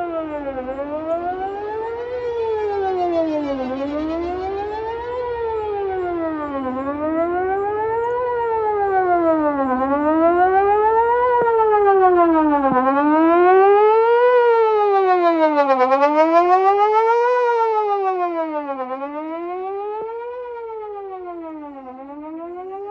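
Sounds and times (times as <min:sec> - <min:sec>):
distant warning siren wailing: 0:00.0 - 0:22.9.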